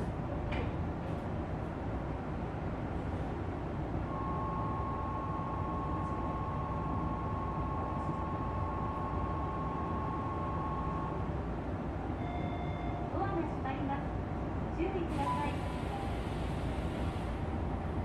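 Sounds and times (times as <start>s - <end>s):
train cabin hum: 0.0s - 18.0s.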